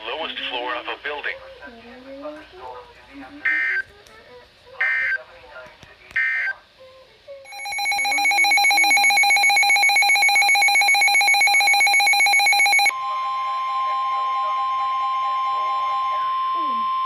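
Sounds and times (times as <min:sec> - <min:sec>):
steady warning alarm tone: 0:04.8 - 0:05.2, 0:07.5 - 0:17.0
weather radio alarm beeping: 0:07.5 - 0:17.0.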